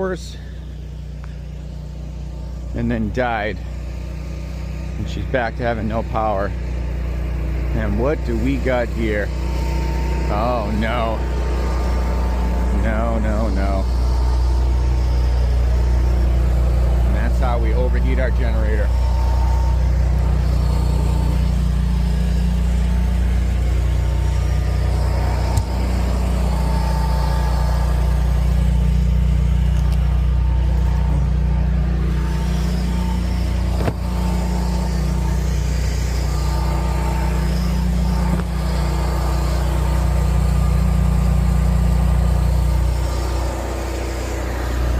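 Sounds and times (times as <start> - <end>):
engine droning: 0.0 - 44.9
faint steady whine: 0.0 - 44.9.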